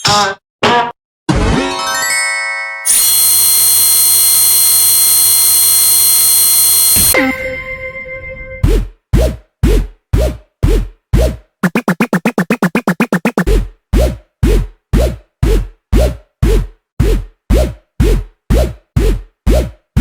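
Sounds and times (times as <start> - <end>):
drum-machine kick: 8.6 - 20.0.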